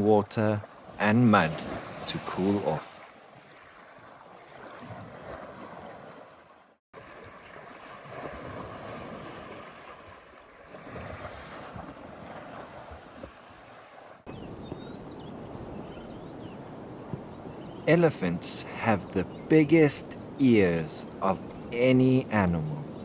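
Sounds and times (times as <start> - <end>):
water sloshing and splashing: 0.6 - 17.6.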